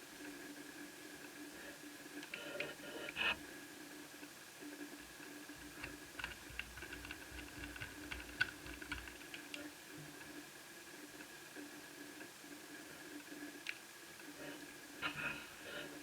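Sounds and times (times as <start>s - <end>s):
faint steady hum: 0.0s - 16.0s
small plastic parts clicking: 5.7s - 9.6s.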